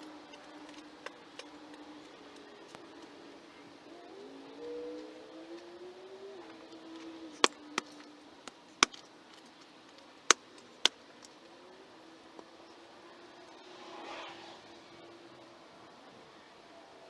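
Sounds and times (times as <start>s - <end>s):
tool striking rock: 7.4s - 9.0s.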